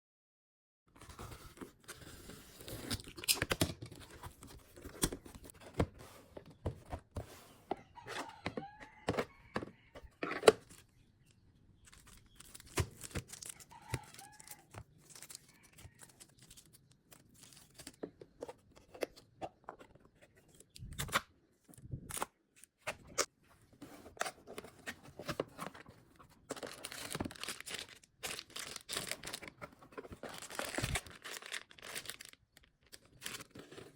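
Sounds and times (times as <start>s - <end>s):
wrapping crinkling: 11.8s - 17.8s, 26.5s - 33.6s
packaging tearing: 11.9s - 15.4s, 26.5s - 29.6s, 30.2s - 33.6s.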